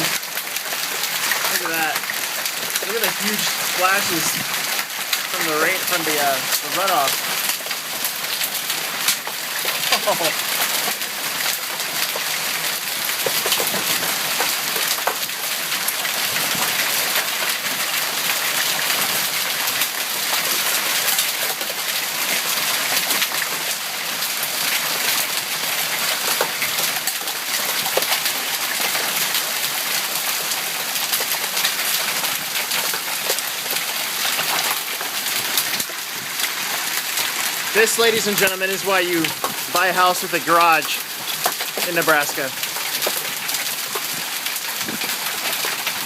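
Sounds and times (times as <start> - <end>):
hail impacts: 0.0 - 46.0
heavy rain hissing: 1.0 - 7.5, 9.8 - 10.6, 34.0 - 44.3.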